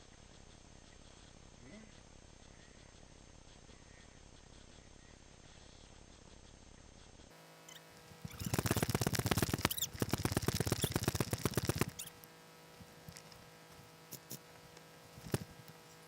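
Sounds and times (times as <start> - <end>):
airsoft gun firing rapid clicks: 8.3 - 12.1.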